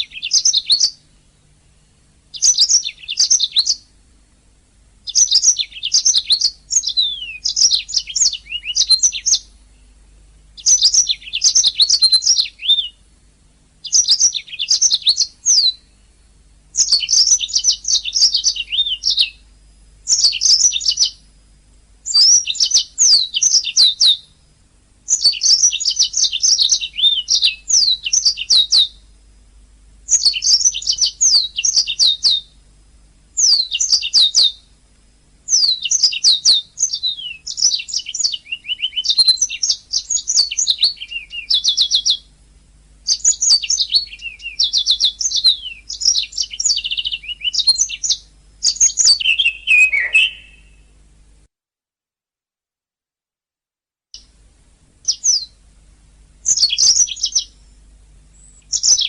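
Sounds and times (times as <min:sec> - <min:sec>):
canary singing trills: 0:00.0 - 0:01.1, 0:02.3 - 0:03.9, 0:05.0 - 0:13.1, 0:13.8 - 0:21.3, 0:22.0 - 0:24.5, 0:25.1 - 0:29.2, 0:30.1 - 0:32.6, 0:33.4 - 0:34.8, 0:35.4 - 0:42.4, 0:43.0 - 0:50.9, 0:55.0 - 0:55.6, 0:56.4 - 0:59.0.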